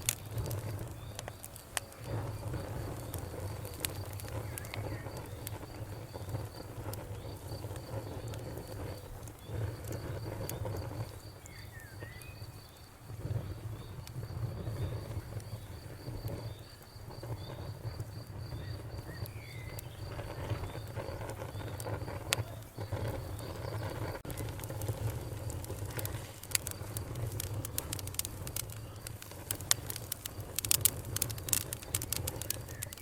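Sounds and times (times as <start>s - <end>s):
campfire rumbling and popping: 0.0s - 33.0s
cricket chirping: 0.2s - 33.0s.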